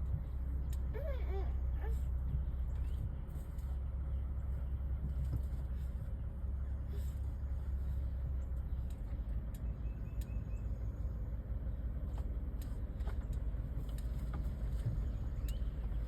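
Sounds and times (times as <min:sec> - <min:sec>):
low outdoor rumble: 0:00.0 - 0:16.0
faint high bird chirps: 0:09.6 - 0:11.8, 0:14.9 - 0:16.0.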